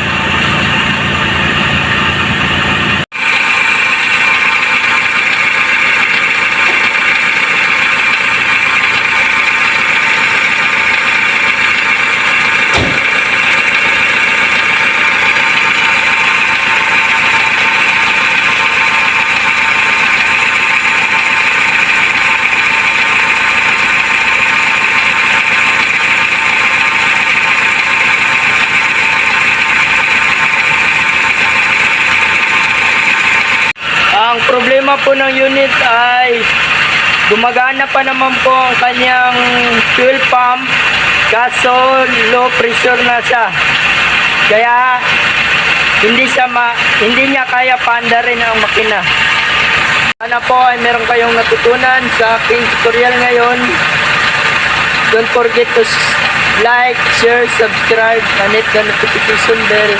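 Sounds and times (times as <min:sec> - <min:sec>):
car engine idling: 0:00.0 - 0:59.9
sharp click: 0:12.7 - 0:13.2.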